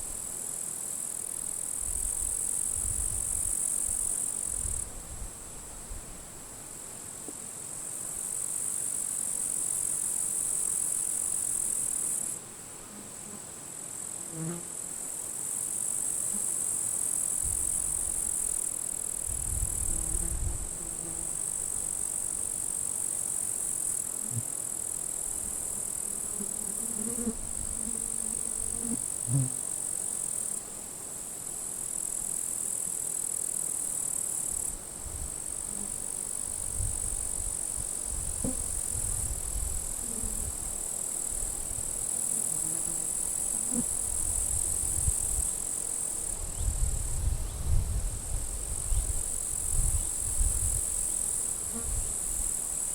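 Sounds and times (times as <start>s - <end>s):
wind rumbling on microphone: 1.8s - 3.5s, 19.3s - 20.7s, 36.6s - 40.6s, 46.4s - 51.0s.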